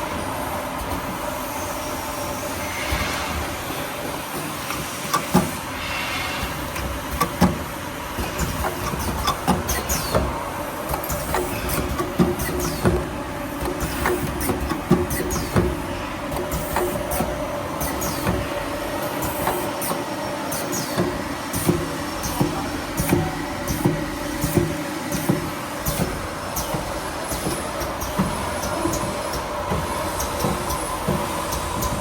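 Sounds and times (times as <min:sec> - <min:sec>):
machine mechanical hum: 0:00.0 - 0:32.0.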